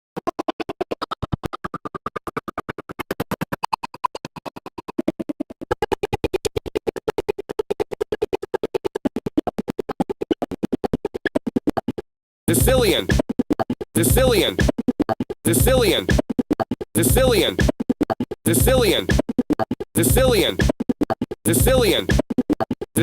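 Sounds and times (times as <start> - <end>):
stuttering chopped voice snippets: 9.2 - 23.0.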